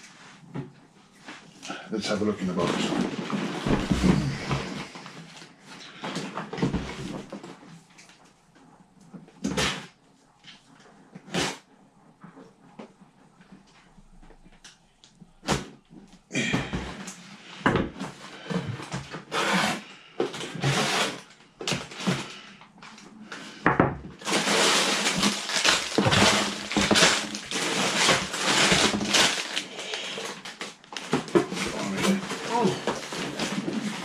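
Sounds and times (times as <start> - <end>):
cardboard scraping and knocking: 2.7 - 5.0, 24.2 - 29.6
plastic bags rustling: 24.2 - 34.0.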